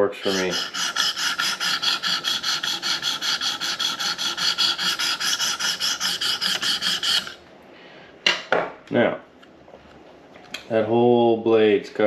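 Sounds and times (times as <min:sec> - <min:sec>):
stone rasping on knife blade: 0:00.0 - 0:07.4.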